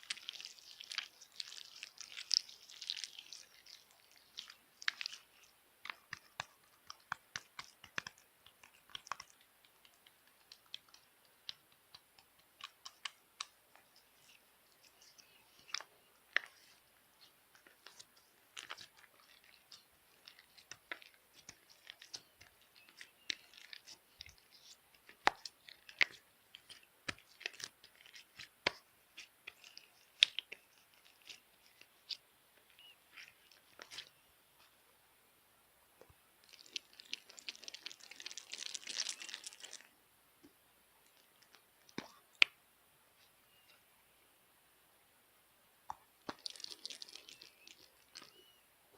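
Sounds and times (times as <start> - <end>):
slime crackling and popping: 0.0 - 32.2, 36.4 - 39.9, 45.9 - 48.4.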